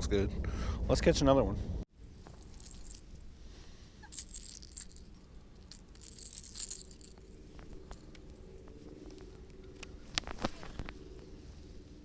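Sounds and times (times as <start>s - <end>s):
faint low rumble: 0.0s - 12.0s
fishing lure rattling: 2.2s - 3.2s, 4.0s - 8.5s.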